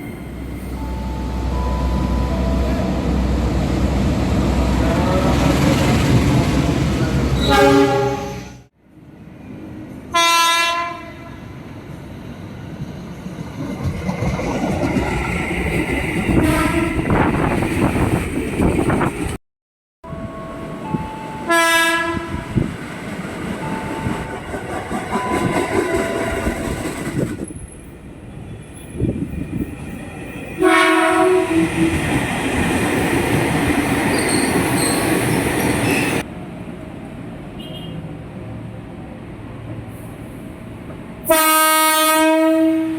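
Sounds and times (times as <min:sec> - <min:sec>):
rumble and wheel clatter of trains: 0:00.0 - 0:19.4, 0:20.1 - 0:42.9
train horn blasts: 0:07.4 - 0:08.6, 0:10.1 - 0:11.6, 0:16.4 - 0:17.2, 0:21.4 - 0:22.6, 0:30.6 - 0:31.9, 0:41.2 - 0:42.9.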